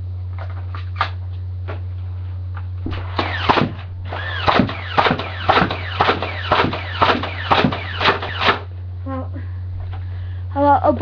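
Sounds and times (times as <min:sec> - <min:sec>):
toy dart blaster firing: 0:03.1 - 0:08.7.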